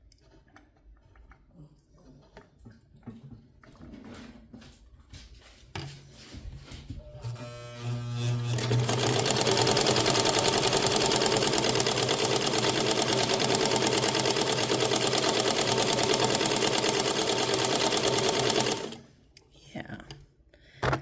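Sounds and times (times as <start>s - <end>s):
sewing machine running: 7.2s - 19.1s.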